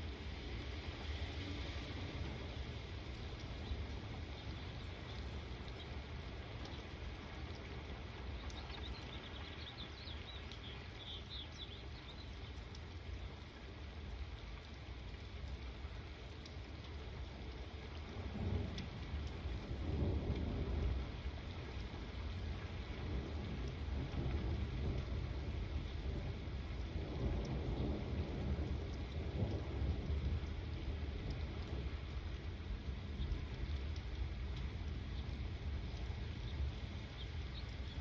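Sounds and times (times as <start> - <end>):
steady rain falling: 0.0 - 38.0
low rolling thunder: 18.1 - 38.0.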